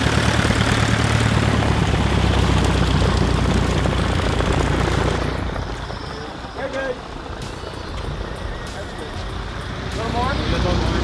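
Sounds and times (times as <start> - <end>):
light plane engine and propeller: 0.0 - 11.0.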